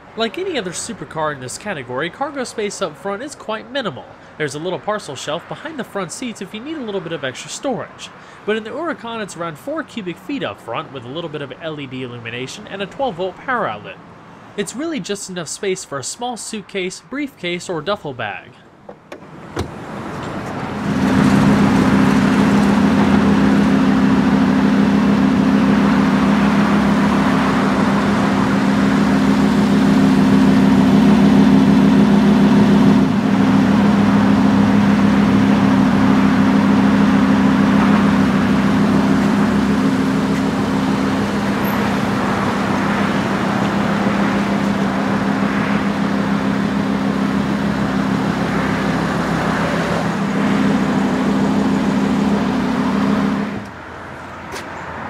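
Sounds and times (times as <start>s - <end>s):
car engine droning: 18.5s - 55.0s.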